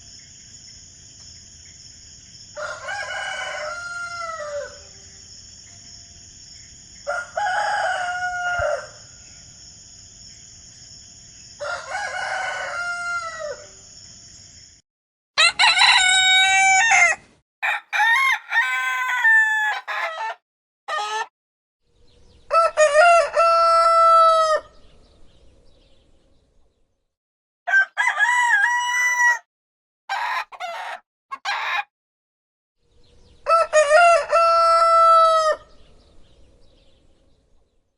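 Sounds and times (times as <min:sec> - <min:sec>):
roosters crowing: 0:02.6 - 0:05.0, 0:07.0 - 0:09.1, 0:11.6 - 0:13.8, 0:15.4 - 0:21.3, 0:22.5 - 0:24.8, 0:27.7 - 0:29.5, 0:30.1 - 0:31.9, 0:33.4 - 0:35.7.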